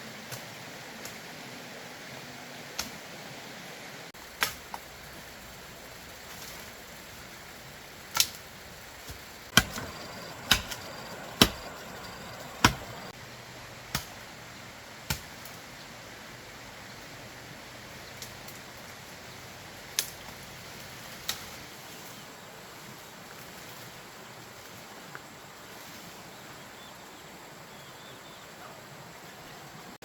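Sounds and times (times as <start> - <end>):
hand tool knocks: 9.6 - 13.1.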